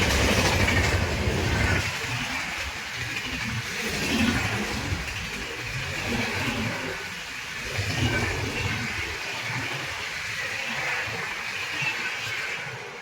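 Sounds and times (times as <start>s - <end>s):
express train rushing past: 0.0s - 9.5s.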